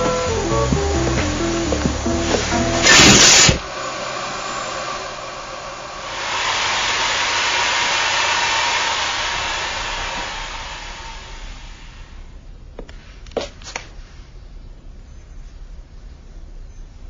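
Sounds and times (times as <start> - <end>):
vacuum cleaner running: 0.0 - 12.4
loud burst of noise: 0.0 - 12.5.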